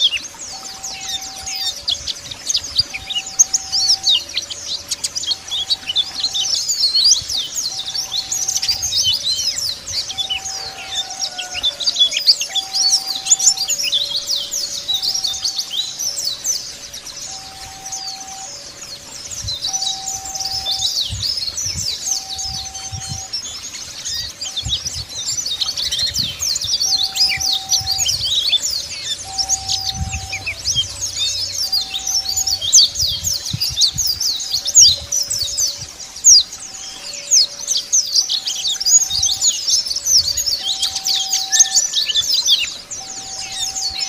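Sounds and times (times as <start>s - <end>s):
birds twittering chirps: 0.0s - 44.0s
low two-note tone: 12.4s - 23.5s, 25.8s - 33.8s.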